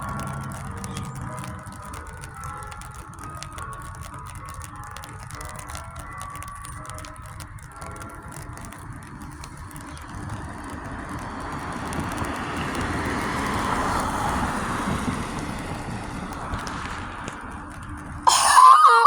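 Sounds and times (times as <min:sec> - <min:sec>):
vehicle passing by: 0:00.0 - 0:02.3, 0:10.1 - 0:18.2.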